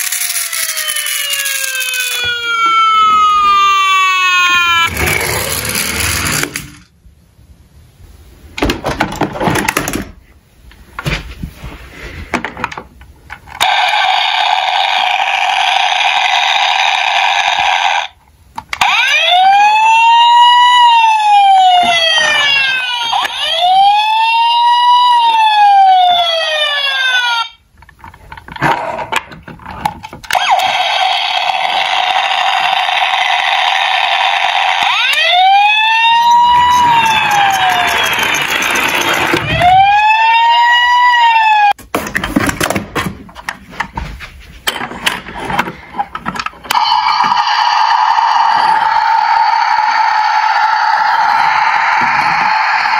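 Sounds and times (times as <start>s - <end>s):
toy wail siren: 0.0s - 6.0s, 13.6s - 18.1s, 18.8s - 27.6s, 30.3s - 41.8s, 46.7s - 52.9s.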